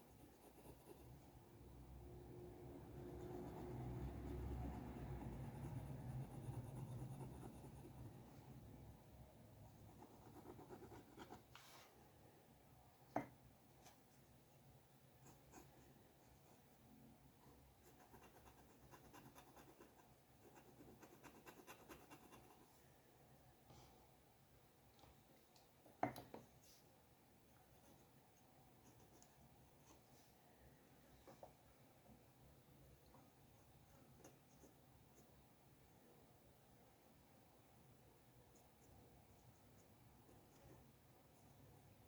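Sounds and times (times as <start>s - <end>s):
drawing tool scratching on paper: 0.0s - 1.2s, 4.9s - 8.2s, 9.8s - 11.6s, 17.8s - 22.6s.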